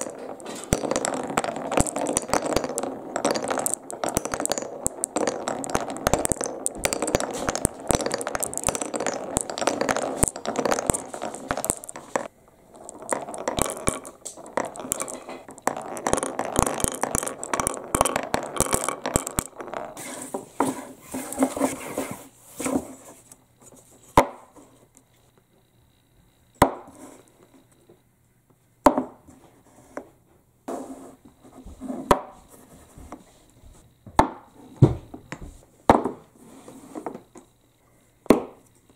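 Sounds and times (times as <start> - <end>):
balls rolling down wooden marble run: 0.0 - 22.1.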